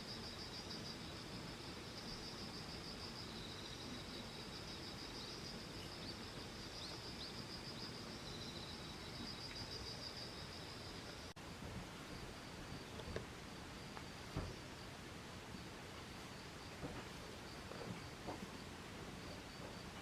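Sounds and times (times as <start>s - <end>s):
insects trilling: 0.0s - 11.4s.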